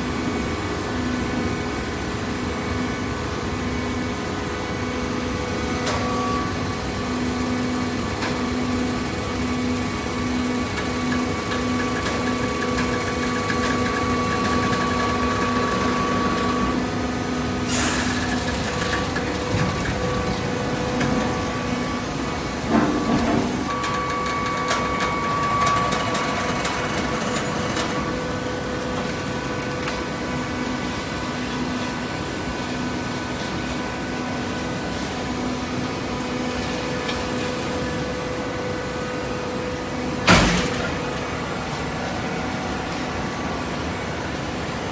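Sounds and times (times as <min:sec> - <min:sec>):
hydraulic pump motor humming: 0:05.9 - 0:30.7
loud clunk: 0:40.2 - 0:41.5.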